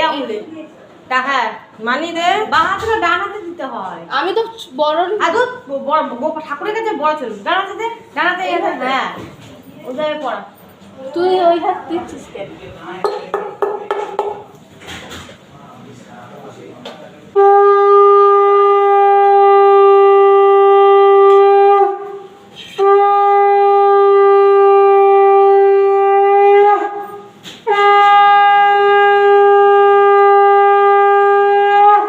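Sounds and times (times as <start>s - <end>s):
conch shell blasts: 17.4s - 32.0s.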